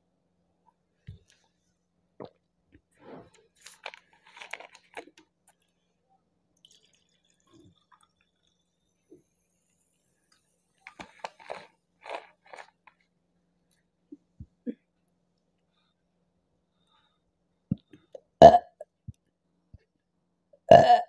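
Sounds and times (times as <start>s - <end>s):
person gulping a drink: 3.3s - 5.6s, 6.6s - 8.6s, 10.9s - 12.9s, 17.7s - 18.9s, 20.7s - 21.0s.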